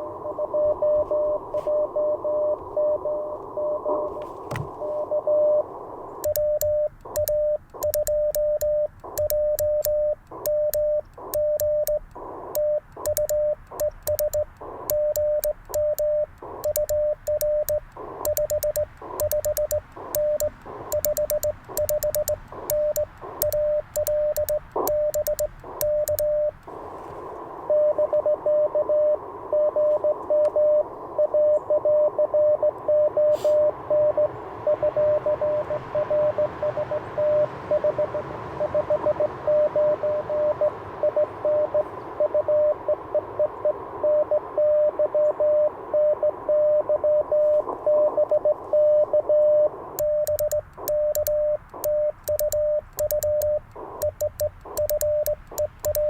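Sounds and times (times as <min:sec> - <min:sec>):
morse code sidetone beeps: 0:00.0 - 0:04.2, 0:04.8 - 0:26.8, 0:27.7 - 0:56.0
radio band hiss: 0:03.3 - 0:28.2, 0:33.3 - 0:33.7, 0:52.8 - 0:56.0
received morse code: 0:04.8 - 0:27.0, 0:27.7 - 0:56.0
morse key mechanical clicks: 0:06.2 - 0:26.7, 0:50.0 - 0:56.0.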